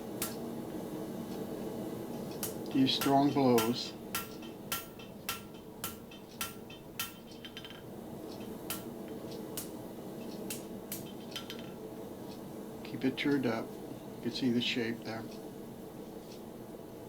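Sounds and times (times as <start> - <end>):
hammer striking steel on anvil: 0.1 - 0.4, 2.4 - 7.8, 8.4 - 9.8.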